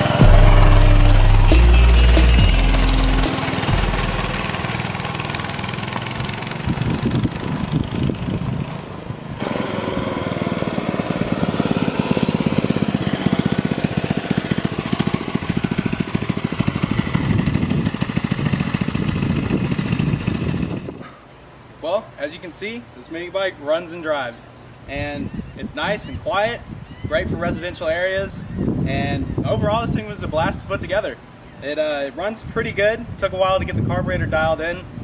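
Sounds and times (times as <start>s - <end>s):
mini bike engine running: 0.0s - 8.8s, 9.4s - 21.0s.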